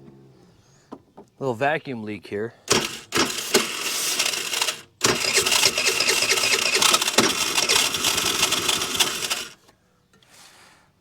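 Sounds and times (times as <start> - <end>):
scooter engine cranking: 2.7 - 9.6.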